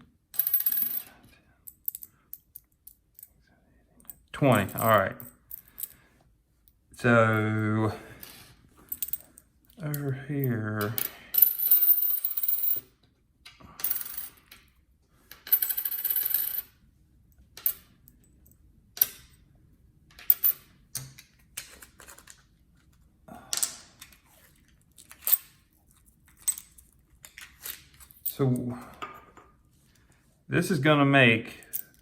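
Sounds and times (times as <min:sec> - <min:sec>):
coins set down: 0:00.4 - 0:01.1, 0:10.8 - 0:12.9, 0:13.8 - 0:14.7, 0:15.3 - 0:16.7, 0:20.1 - 0:22.5.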